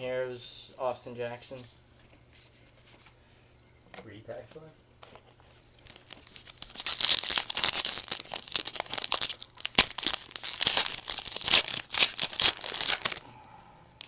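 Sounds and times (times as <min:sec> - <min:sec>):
wrapper tearing and crinkling: 0:05.8 - 0:13.2.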